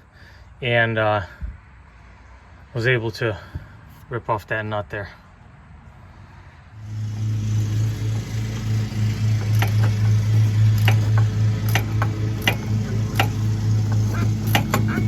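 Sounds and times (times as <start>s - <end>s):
low mechanical hum: 6.7s - 15.0s
ratchet ticking: 8.2s - 15.0s.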